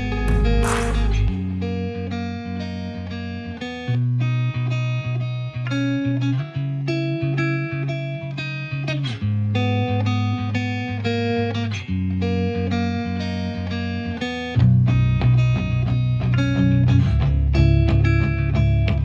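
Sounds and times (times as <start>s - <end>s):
bass line: 0.0s - 2.2s
plucked guitar: 0.0s - 19.0s.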